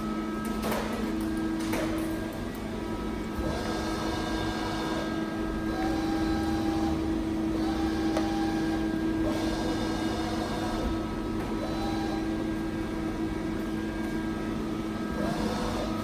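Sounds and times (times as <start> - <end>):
motors whining: 3.3 - 11.0.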